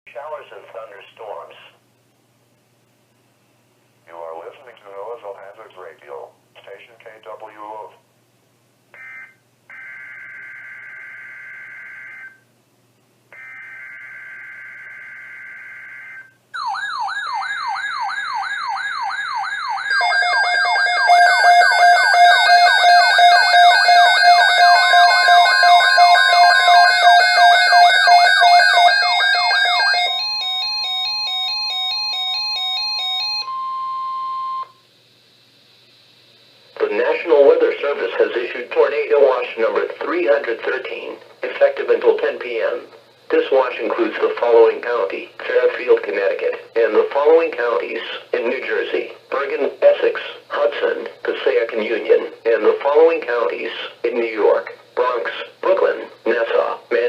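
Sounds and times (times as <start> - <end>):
beeping alarm tones: 9.0 - 12.4, 13.4 - 34.8
wailing siren-like sweep: 13.4 - 30.6
steady alert tone: 16.6 - 30.6.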